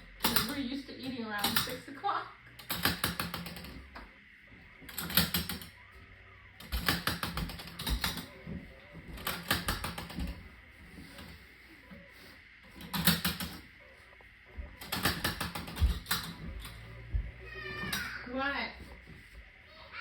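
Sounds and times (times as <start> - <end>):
household objects clicking and rattling: 0.1 - 1.9, 2.5 - 4.0, 4.9 - 5.7, 6.6 - 10.5, 12.7 - 13.7, 14.8 - 16.9.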